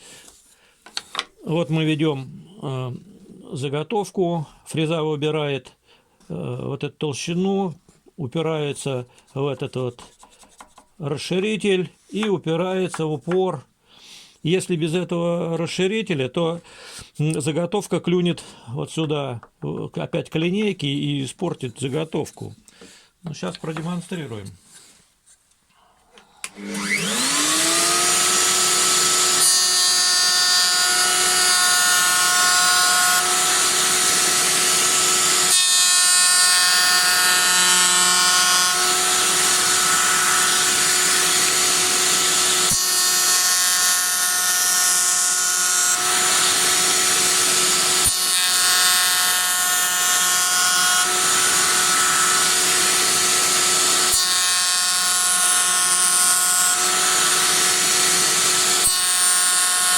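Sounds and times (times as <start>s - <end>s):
router cutting wood: 26.4s - 59.9s
router motor high whine: 26.4s - 59.9s.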